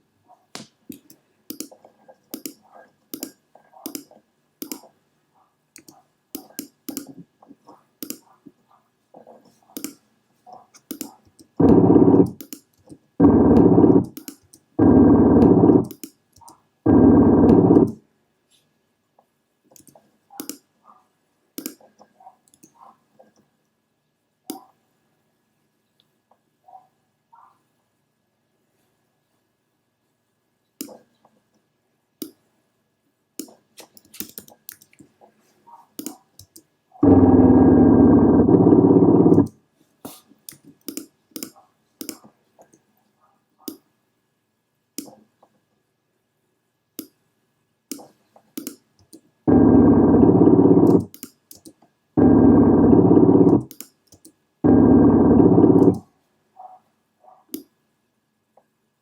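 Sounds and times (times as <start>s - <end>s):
computer mouse clicks: 0.6s - 5.0s, 5.8s - 8.5s, 9.2s - 14.7s, 15.4s - 16.6s, 17.4s - 18.0s, 19.7s - 20.7s, 21.6s - 23.5s, 24.5s - 24.8s, 30.8s - 31.2s, 32.2s - 32.4s, 33.4s - 35.1s, 35.9s - 36.7s, 38.5s - 42.8s, 43.6s - 43.8s, 45.0s - 45.3s, 47.0s - 47.2s, 47.9s - 49.3s, 50.7s - 52.3s, 53.0s - 54.4s, 55.0s - 56.1s, 57.5s - 57.8s.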